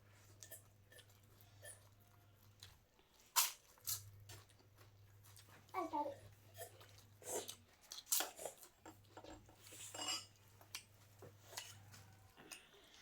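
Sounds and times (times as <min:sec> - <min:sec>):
utensils clinking against dishes: 0:08.1 - 0:10.4.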